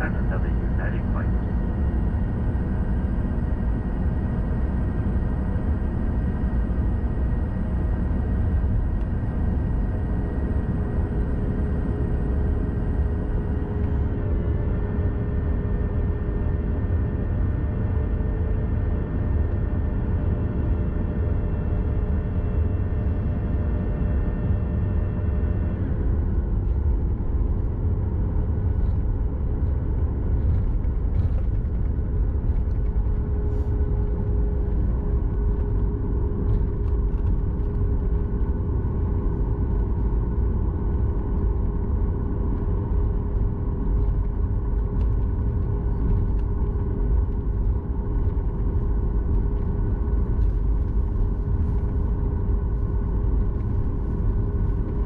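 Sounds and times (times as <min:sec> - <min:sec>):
jet engines idling: 0:00.0 - 0:13.5
steady cabin hum: 0:00.0 - 0:14.1.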